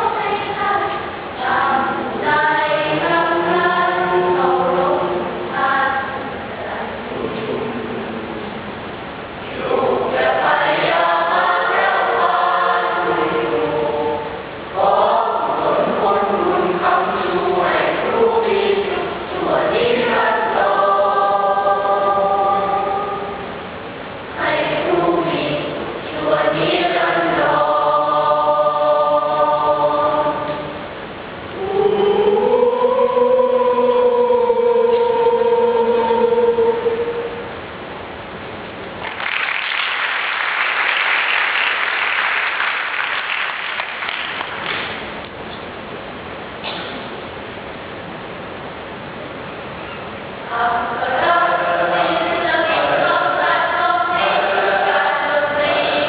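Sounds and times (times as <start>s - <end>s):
choir singing in parts: 0.0s - 8.2s, 9.4s - 37.6s, 50.4s - 56.0s
audience applauding: 39.0s - 45.1s.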